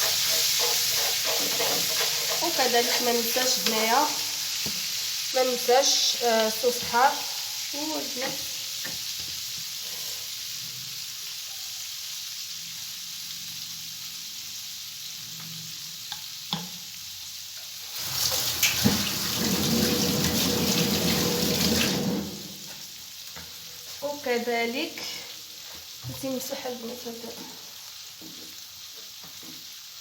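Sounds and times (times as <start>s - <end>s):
food sizzling in a pan: 0.0s - 30.0s
water running from a tap: 17.8s - 23.0s.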